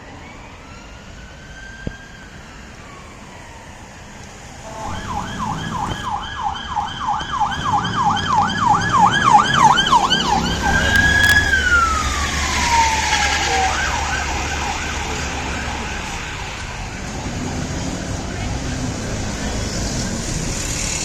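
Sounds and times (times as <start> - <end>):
police siren: 0.0 - 20.4.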